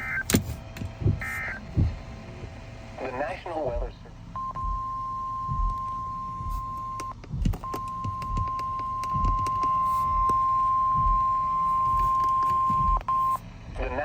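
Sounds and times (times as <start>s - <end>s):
weather radio alarm beep: 0.0s - 0.3s, 1.2s - 1.7s, 3.0s - 14.0s
soft low thumps: 0.0s - 14.0s.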